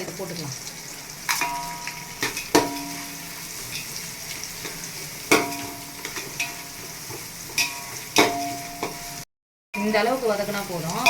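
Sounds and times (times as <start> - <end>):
onions sizzling in a pan: 0.0 - 11.0
utensil knocking against pan: 5.3 - 6.5.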